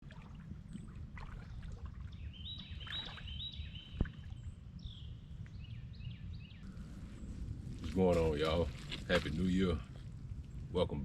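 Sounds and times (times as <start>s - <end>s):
small birds chirping: 0.7s - 11.0s
low outdoor rumble: 3.7s - 11.0s.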